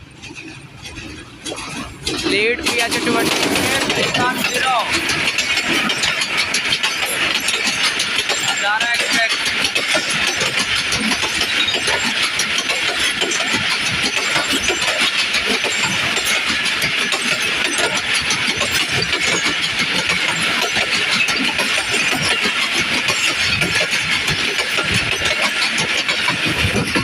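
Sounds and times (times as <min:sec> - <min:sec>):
passenger train rumbling past: 0:00.0 - 0:27.0
wheels and coaches rattling: 0:00.0 - 0:27.0.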